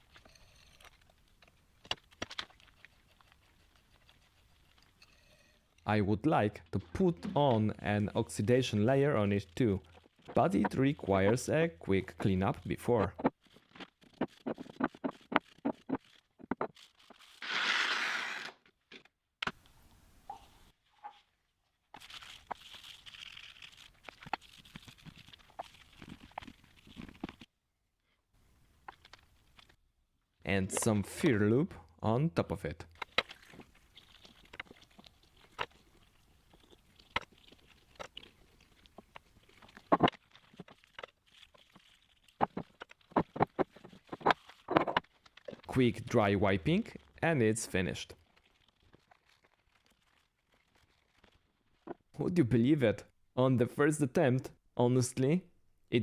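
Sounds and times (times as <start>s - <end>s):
clicks rubs and knocks of handling: 12.1s - 17.4s.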